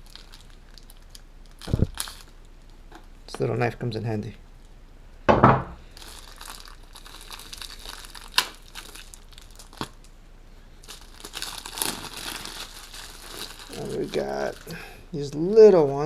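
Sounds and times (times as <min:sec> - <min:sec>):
packaging crinkling and tearing: 0:00.0 - 0:03.1, 0:05.9 - 0:10.2, 0:10.8 - 0:14.8.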